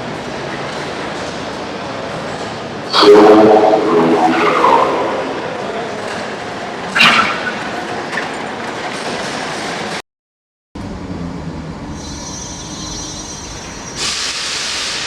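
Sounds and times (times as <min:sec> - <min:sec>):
train rumbling on rails: 0:10.8 - 0:15.0.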